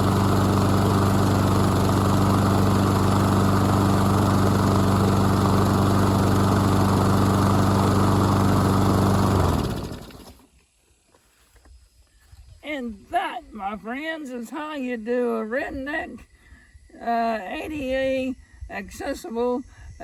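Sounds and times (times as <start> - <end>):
lawn mower engine running: 0.0 - 10.5.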